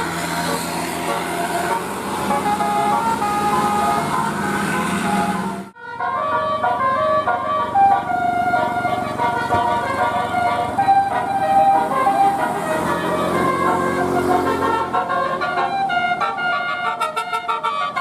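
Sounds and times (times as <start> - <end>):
multi-tone bus air horns tune: 0.0 - 18.0.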